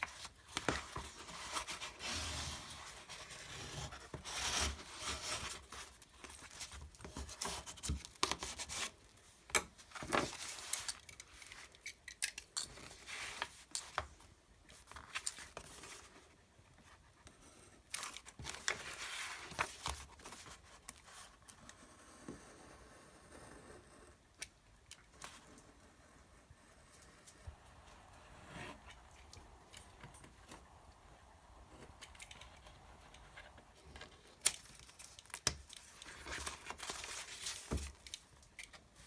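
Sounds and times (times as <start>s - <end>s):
paper rustling: 18.0s - 21.3s, 32.0s - 39.0s.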